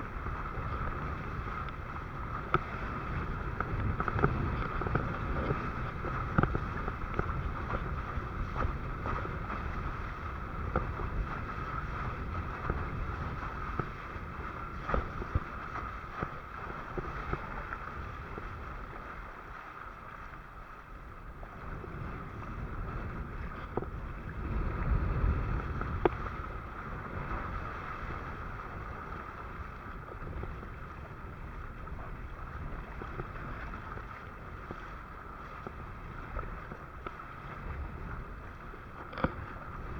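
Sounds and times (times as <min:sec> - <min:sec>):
water rushing and splashing: 0:00.0 - 0:39.9
wind buffeting microphone: 0:00.0 - 0:39.9
water slaps: 0:00.1 - 0:18.4.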